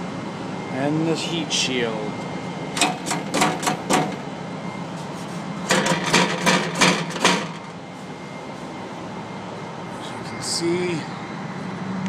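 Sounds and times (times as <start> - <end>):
metal heat shield clattering: 2.8 - 4.2, 5.6 - 7.7.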